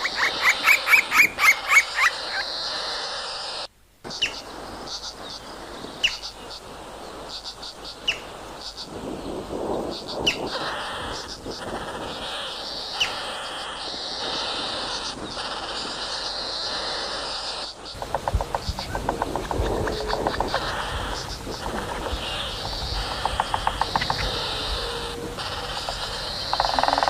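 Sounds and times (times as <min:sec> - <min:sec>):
woodpecker calling: 0:00.0 - 0:08.9, 0:09.9 - 0:27.0
high chirps: 0:17.9 - 0:27.0
steady high buzz: 0:18.0 - 0:27.0.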